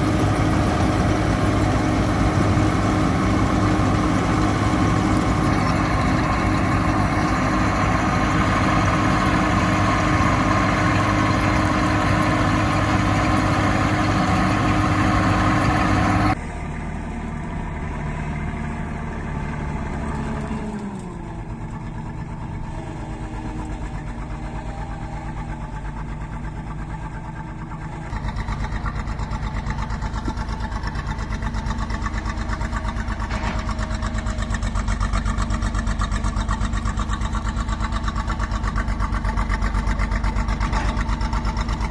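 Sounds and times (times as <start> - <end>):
farm machinery engine running: 0.0 - 41.9.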